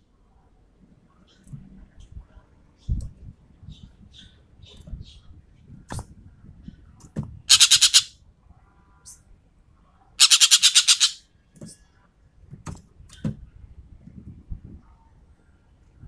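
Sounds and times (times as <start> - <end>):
bird chattering: 7.5 - 8.1, 10.2 - 11.2.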